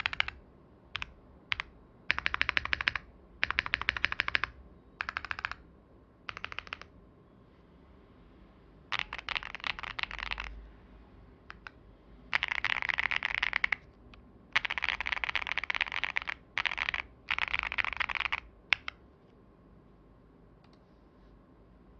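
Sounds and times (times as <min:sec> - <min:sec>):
mechanical keyboard typing: 0:00.0 - 0:05.6, 0:06.3 - 0:06.9, 0:08.9 - 0:10.6, 0:11.5 - 0:13.9, 0:14.5 - 0:19.0.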